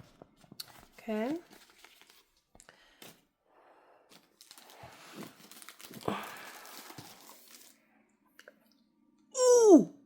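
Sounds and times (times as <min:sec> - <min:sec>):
packaging rustling and crinkling: 0:00.4 - 0:03.2, 0:04.1 - 0:07.8.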